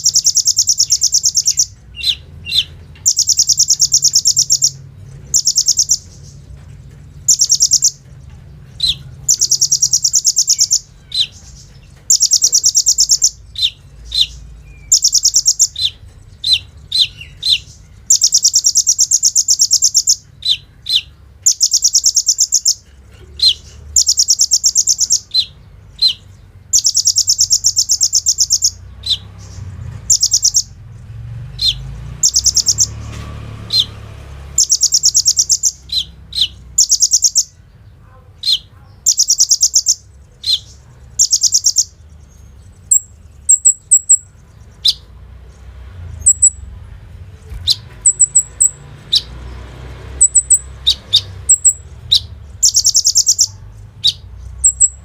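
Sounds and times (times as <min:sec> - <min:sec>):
sunbird high rapid trills: 0:47.7 - 0:55.0.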